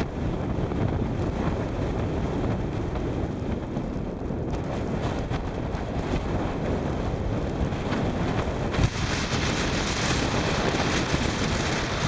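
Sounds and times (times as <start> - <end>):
blizzard wind buffeting microphone: 0.0 - 12.0.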